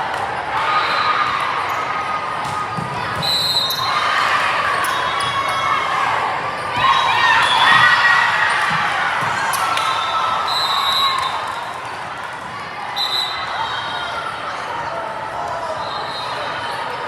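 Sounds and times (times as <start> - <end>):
crowd chatter: 0.0 - 17.0
volleyball ball contacts: 2.3 - 5.7, 6.6 - 11.6.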